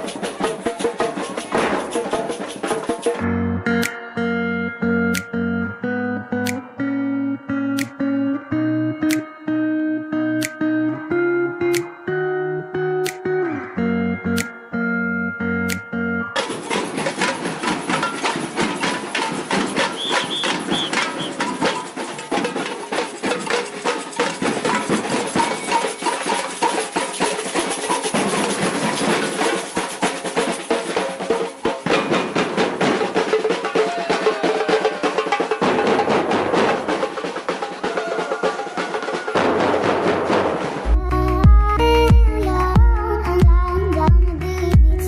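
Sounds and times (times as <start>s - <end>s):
samba percussion ensemble: 0.0s - 3.2s, 16.4s - 40.8s.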